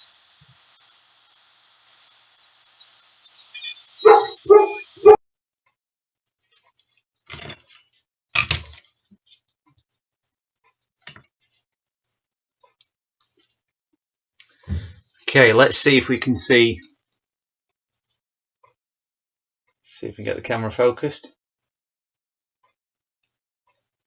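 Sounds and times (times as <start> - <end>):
high hiss: 0.0 - 5.1
dog barking: 4.0 - 5.2.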